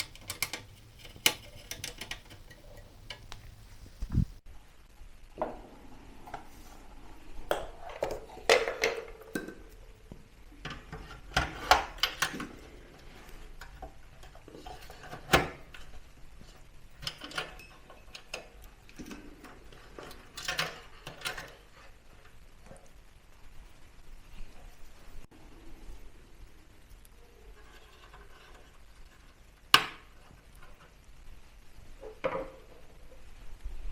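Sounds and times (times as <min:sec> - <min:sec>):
computer parts clicking and knocking: 0:00.0 - 0:04.4.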